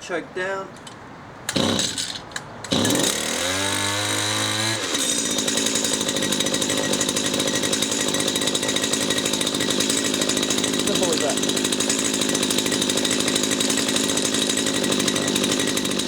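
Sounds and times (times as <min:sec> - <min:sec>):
starter cord pull: 0:00.8 - 0:03.3.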